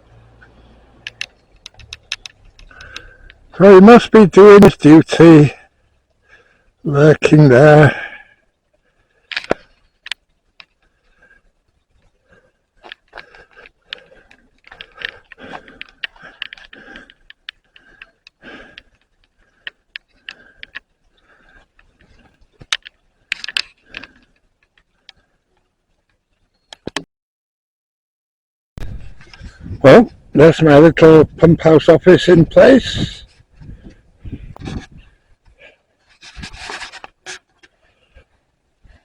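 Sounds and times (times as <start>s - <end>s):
small clicks and taps of model: 1.0s - 3.4s, 9.3s - 10.9s, 12.8s - 20.9s, 21.6s - 27.0s.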